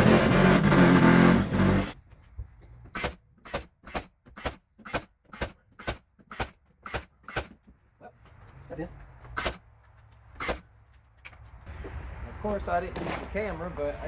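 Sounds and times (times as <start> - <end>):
power saw cutting: 0.0 - 2.0
sharp evenly spaced knocks: 2.9 - 7.8.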